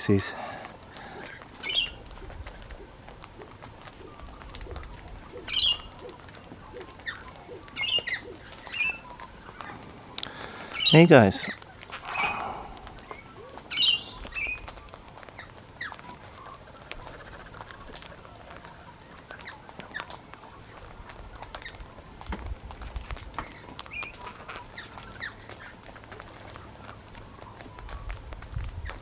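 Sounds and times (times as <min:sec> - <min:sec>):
cockatoo call: 0:00.0 - 0:21.8
beaks cracking food: 0:00.0 - 0:29.0.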